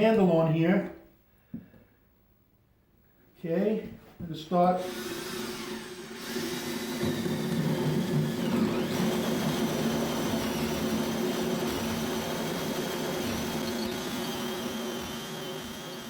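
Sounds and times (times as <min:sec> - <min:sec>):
drill motor whirring: 0:04.8 - 0:16.0.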